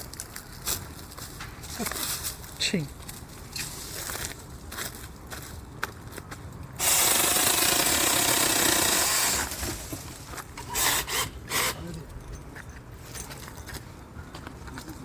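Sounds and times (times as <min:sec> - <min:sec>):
chainsaw cutting through wood: 0:06.8 - 0:11.8.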